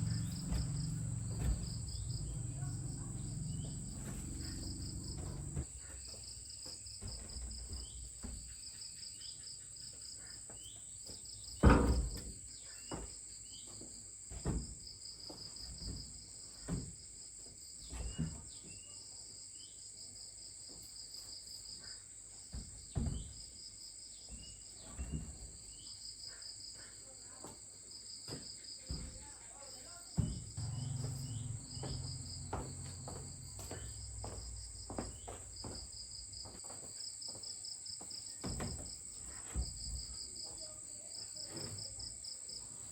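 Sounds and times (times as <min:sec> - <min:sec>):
dull thumps: 0:00.0 - 0:05.9, 0:30.2 - 0:36.7
cricket chirping: 0:00.0 - 0:42.9
insects droning: 0:00.0 - 0:42.9.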